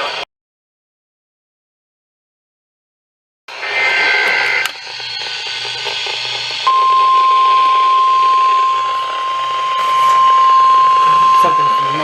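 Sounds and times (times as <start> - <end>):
radio static hiss: 3.5 - 12.0
warbling data burst: 3.5 - 12.0
steady warning alarm tone: 3.8 - 12.0.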